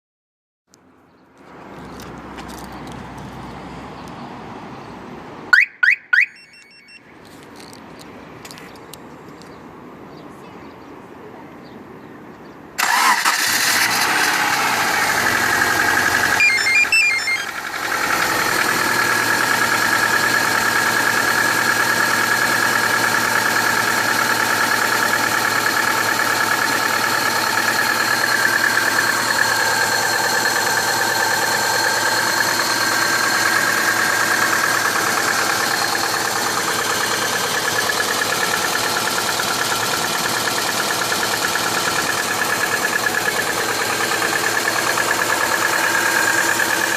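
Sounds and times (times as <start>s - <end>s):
car engine starting and idling: 12.8s - 46.9s
engine knocking: 17.5s - 46.9s.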